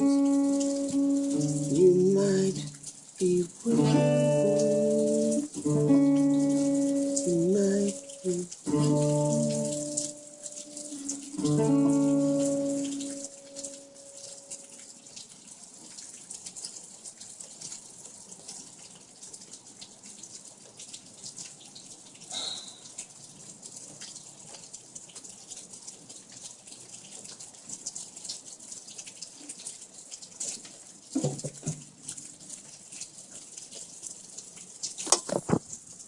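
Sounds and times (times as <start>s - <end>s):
rain falling and dripping: 0.0s - 36.0s
guitar chord ringing: 3.7s - 14.8s.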